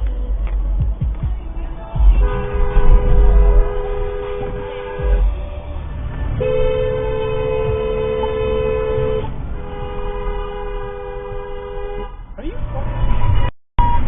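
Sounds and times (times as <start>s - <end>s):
low road rumble: 0.0s - 14.0s
two-note car horn honking: 2.1s - 5.4s, 6.3s - 12.2s.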